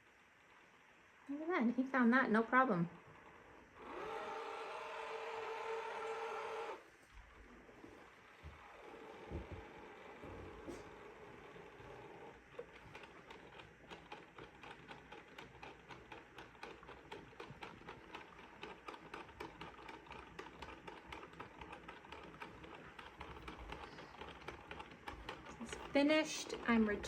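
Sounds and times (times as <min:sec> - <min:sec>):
robot vacuum clicking and humming: 0:03.8 - 0:06.8, 0:08.6 - 0:27.0.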